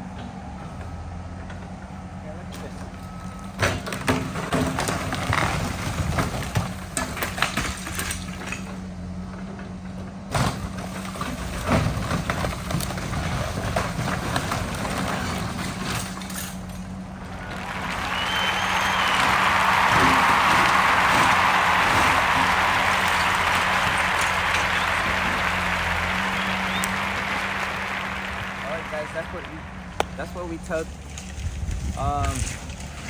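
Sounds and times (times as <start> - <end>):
timber cracking and crashing: 10.3 - 26.8
debris falling: 10.3 - 33.0.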